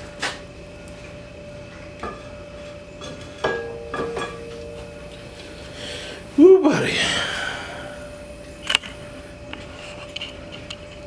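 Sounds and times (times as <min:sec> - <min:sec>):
steel bar clanking on metal: 0:03.0 - 0:04.8.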